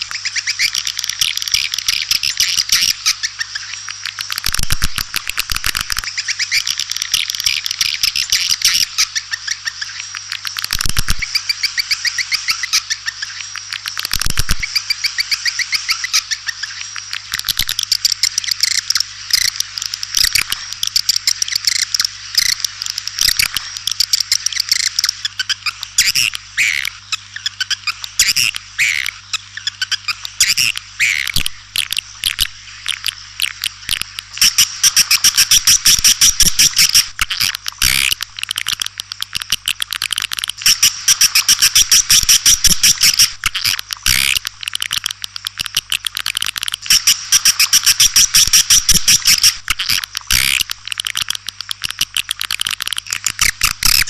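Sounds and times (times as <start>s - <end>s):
swiftlets twittering: 17.6s - 54.0s.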